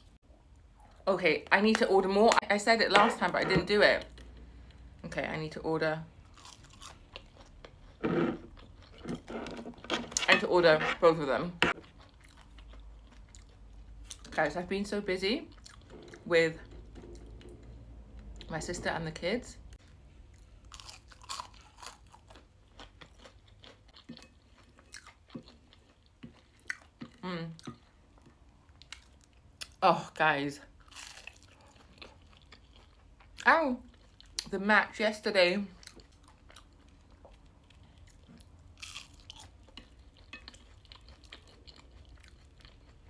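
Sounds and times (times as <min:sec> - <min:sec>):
person chewing crunchy food: 0:06.2 - 0:10.3, 0:11.7 - 0:14.4, 0:15.5 - 0:17.7, 0:19.8 - 0:29.8, 0:30.8 - 0:34.5, 0:35.8 - 0:43.0.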